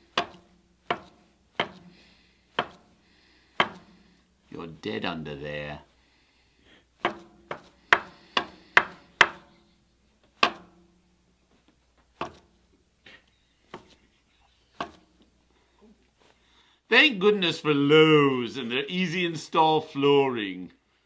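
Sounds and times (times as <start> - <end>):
hammer driving nails into wood: 0.0 - 3.0, 3.6 - 4.2, 7.0 - 9.6, 10.4 - 10.8.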